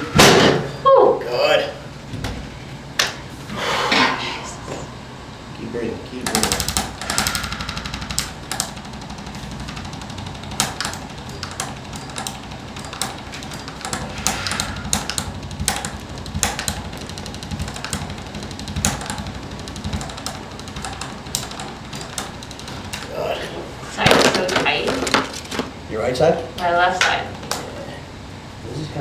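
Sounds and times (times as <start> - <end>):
knocks and clicks on treatment table: 6.2 - 25.8, 26.6 - 27.8.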